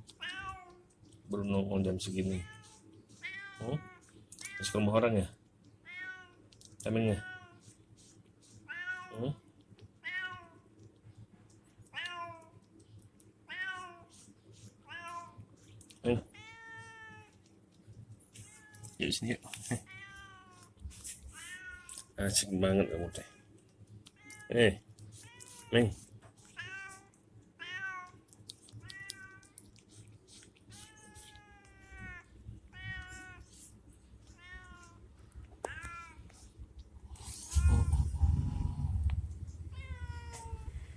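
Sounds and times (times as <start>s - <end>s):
cat meowing: 5.9s - 6.4s, 8.7s - 9.2s, 13.5s - 14.0s, 26.5s - 28.2s, 30.7s - 33.5s, 34.2s - 35.0s, 35.6s - 36.4s, 37.3s - 40.9s.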